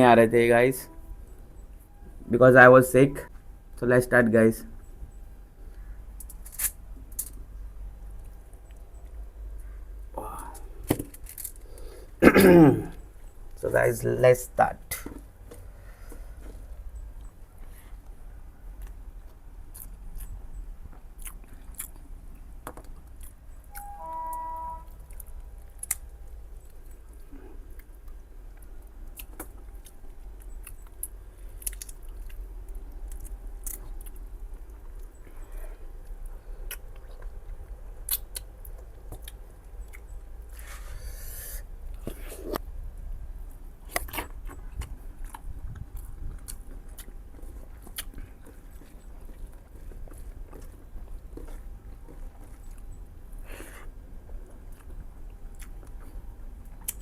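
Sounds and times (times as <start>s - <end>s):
person chewing food: 15.1s - 23.9s, 25.0s - 42.7s, 43.5s - 57.0s.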